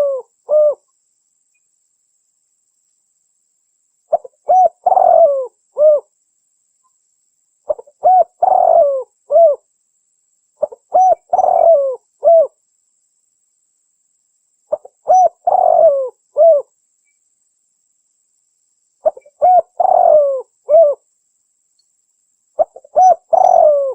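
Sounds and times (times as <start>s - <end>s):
dove cooing: 0.0s - 0.8s, 4.1s - 6.1s, 7.7s - 9.6s, 10.6s - 12.6s, 14.7s - 16.7s, 19.0s - 21.0s, 22.6s - 23.9s.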